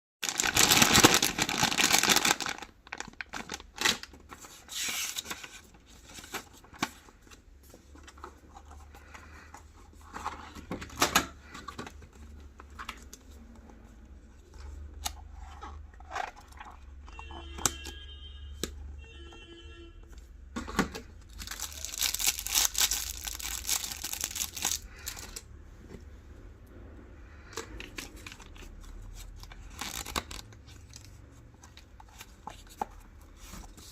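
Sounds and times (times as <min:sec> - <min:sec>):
paper tearing and rustling: 0:00.2 - 0:06.9.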